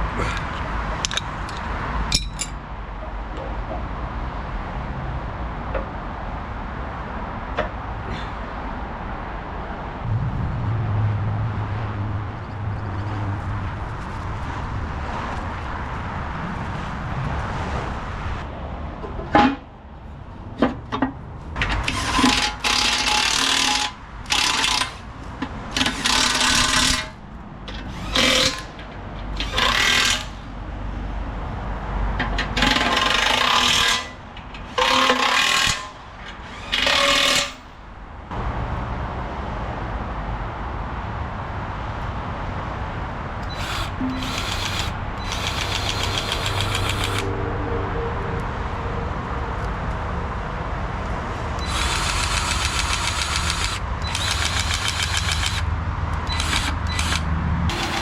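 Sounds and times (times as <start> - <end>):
steady low hum: 9.7 - 16.3
handheld power tool bursts: 21.9 - 25.0, 27.8 - 28.7, 29.4 - 30.4, 34.7 - 37.6, 43.5 - 47.2, 51.6 - 55.6, 56.3 - 58.0.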